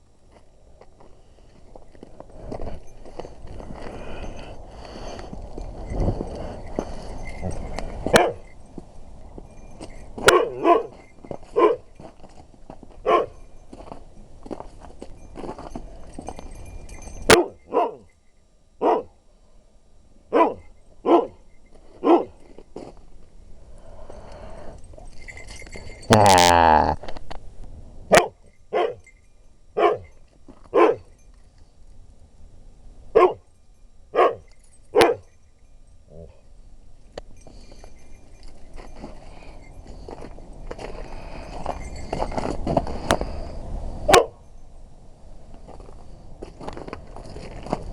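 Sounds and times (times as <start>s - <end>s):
dog barking: 8.1s - 8.4s, 10.2s - 10.9s, 11.6s - 11.8s, 13.0s - 13.4s, 17.3s - 18.0s, 18.8s - 19.1s, 20.3s - 21.4s, 22.0s - 22.3s, 28.1s - 29.0s, 29.8s - 30.1s, 30.8s - 31.1s, 33.2s - 33.4s, 34.2s - 35.2s, 44.1s - 44.4s.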